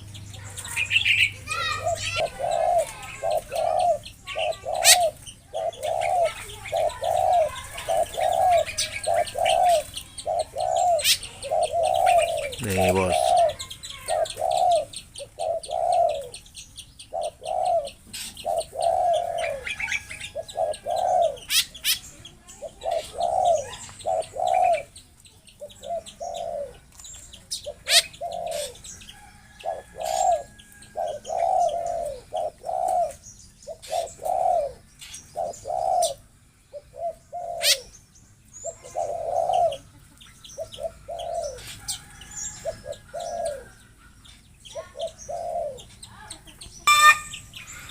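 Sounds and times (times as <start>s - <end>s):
coucals deep hooting calls: 0.0s - 16.3s, 46.9s - 47.9s
high bird chirps: 37.6s - 47.9s.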